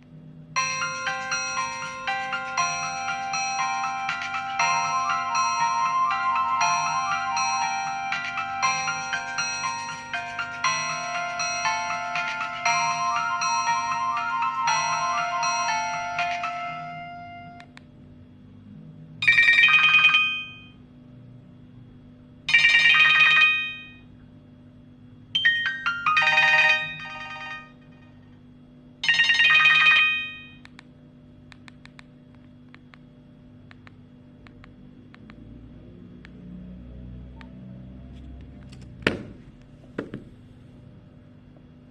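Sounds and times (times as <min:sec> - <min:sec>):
phone melody: 0:00.6 - 0:17.7, 0:19.2 - 0:20.8, 0:25.4 - 0:27.9.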